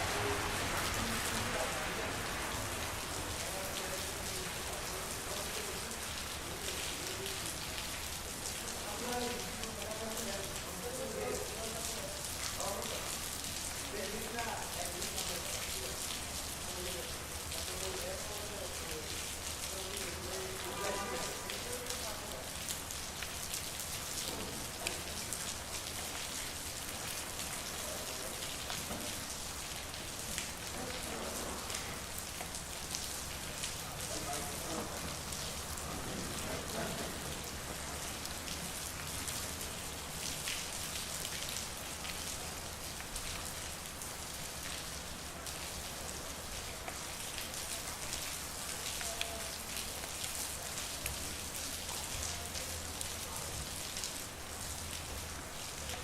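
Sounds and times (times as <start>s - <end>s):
raindrops ticking on hard surfaces: 0.0s - 56.0s
steady rain: 0.0s - 56.0s.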